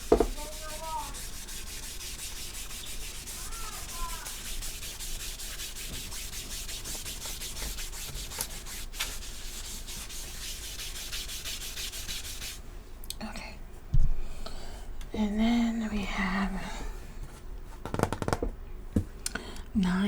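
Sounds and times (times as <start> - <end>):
chalk scratching on chalkboard: 0.0 - 12.6.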